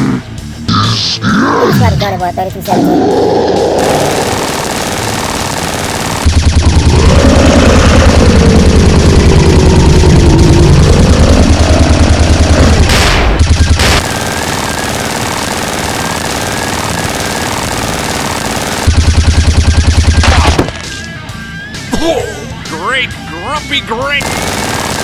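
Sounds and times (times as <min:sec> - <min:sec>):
automatic gunfire: 0:03.8 - 0:09.9, 0:10.8 - 0:20.9, 0:24.2 - 0:25.0.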